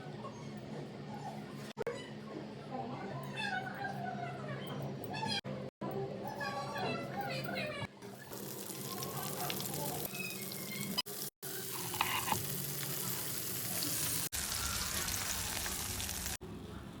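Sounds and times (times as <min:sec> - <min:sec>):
chicken deep-frying in oil: 0:08.1 - 0:16.4.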